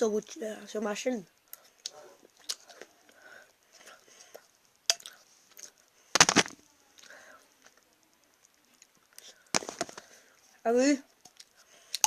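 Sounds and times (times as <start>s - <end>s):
faint chewing: 1.4s - 6.0s, 6.9s - 12.0s
chocolate cracking crunch: 4.3s - 7.8s.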